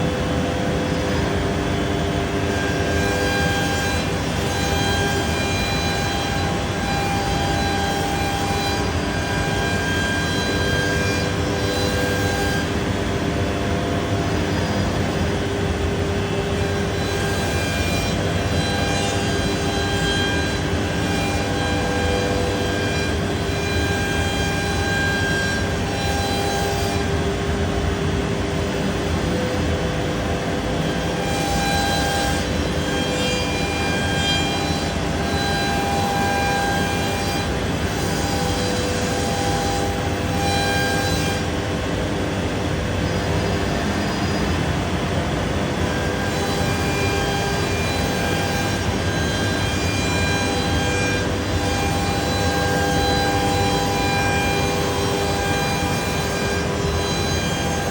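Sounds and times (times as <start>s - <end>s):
router spindle whine: 0.0s - 57.9s
wood cutting rush: 2.3s - 13.0s, 30.1s - 57.9s.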